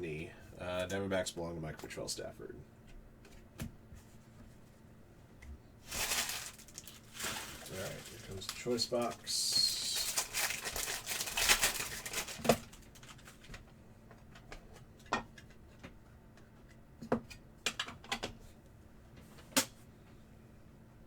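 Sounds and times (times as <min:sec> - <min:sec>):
packaging rustling: 0:05.8 - 0:13.5.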